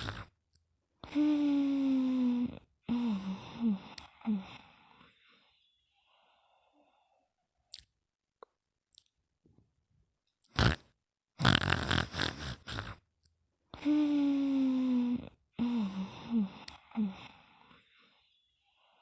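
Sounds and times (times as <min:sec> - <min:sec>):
person snoring: 0:00.0 - 0:00.4, 0:01.0 - 0:05.2, 0:10.5 - 0:10.8, 0:11.4 - 0:13.0, 0:13.8 - 0:18.2
mouth clicks: 0:07.7 - 0:09.2, 0:10.4 - 0:13.9.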